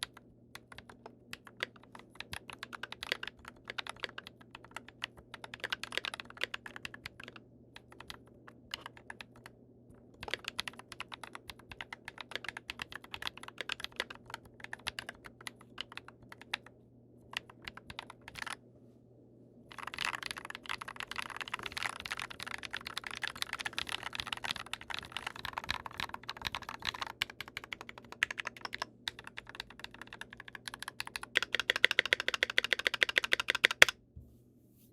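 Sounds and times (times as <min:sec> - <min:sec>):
mechanical keyboard key clacks: 0:21.1 - 0:33.9.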